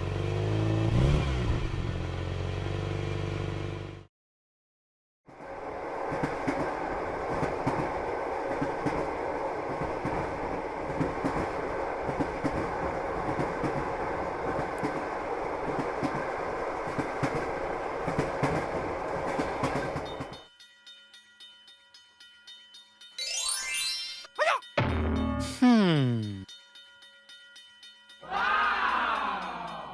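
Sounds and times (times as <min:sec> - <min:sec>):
train rumbling past: 0:05.3 - 0:20.5.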